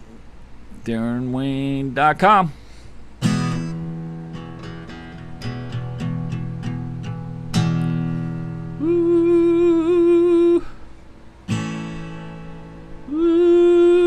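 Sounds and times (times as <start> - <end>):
acoustic guitar strumming: 3.2 - 10.6, 11.2 - 14.0
person singing long woo: 8.8 - 10.9, 13.0 - 14.0.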